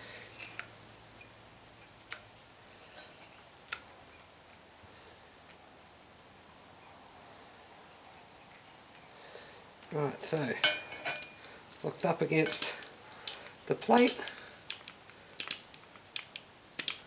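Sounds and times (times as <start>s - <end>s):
metal key clicking on padlock: 14.0s - 17.0s.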